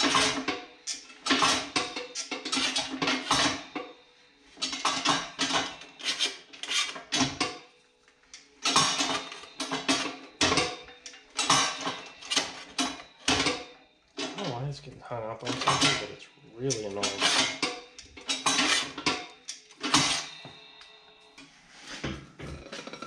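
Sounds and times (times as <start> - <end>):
sheet metal clattering and banging: 0.0 - 3.9, 8.6 - 14.6, 15.4 - 20.4.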